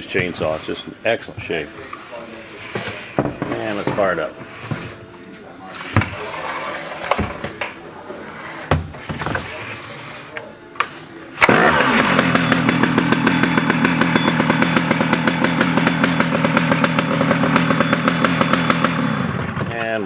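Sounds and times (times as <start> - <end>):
chainsaw engine running: 11.4 - 19.7.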